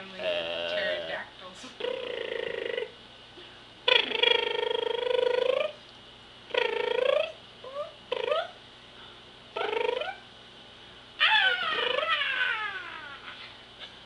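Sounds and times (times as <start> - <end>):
baby squealing: 11.2 - 13.4.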